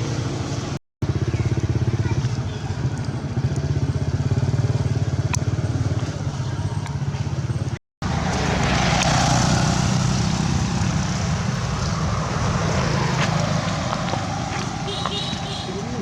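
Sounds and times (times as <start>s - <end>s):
motorcycle engine running: 0.0s - 16.0s
vehicle passing: 3.7s - 16.0s.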